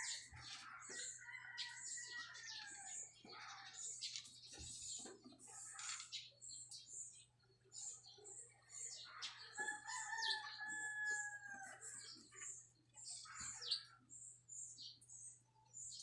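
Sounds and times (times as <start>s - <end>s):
small birds chirping: 0.0s - 16.0s
rooster crowing: 9.6s - 11.8s.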